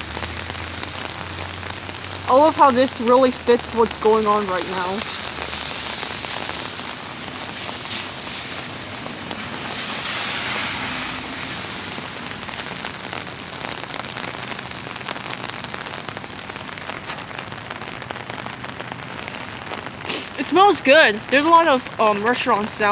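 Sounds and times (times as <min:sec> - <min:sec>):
close raindrops ticking: 0:00.0 - 0:22.9
heavy rain hissing: 0:00.0 - 0:22.9.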